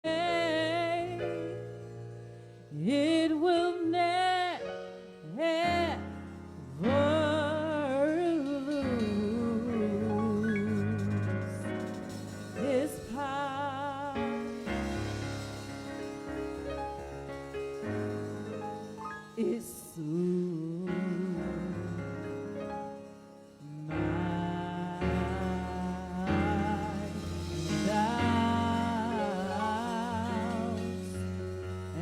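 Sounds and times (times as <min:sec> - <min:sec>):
held keyboard chords: 0:00.1 - 0:32.0
person singing gospel: 0:05.3 - 0:14.6, 0:19.4 - 0:22.4, 0:23.7 - 0:32.0.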